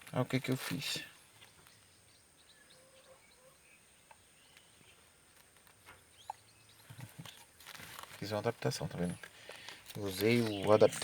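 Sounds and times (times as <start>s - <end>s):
faint bird chirps: 0.9s - 7.6s.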